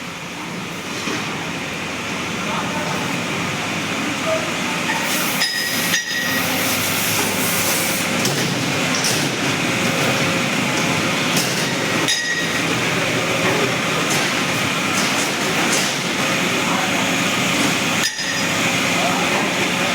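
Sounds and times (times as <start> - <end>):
concrete mixer rumbling: 8.0 - 19.9.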